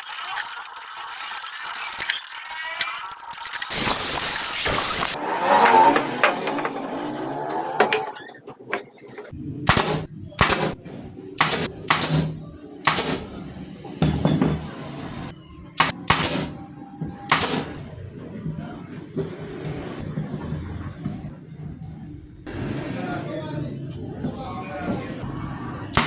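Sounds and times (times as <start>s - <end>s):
sharp strikes on wood: 15.8s - 16.5s.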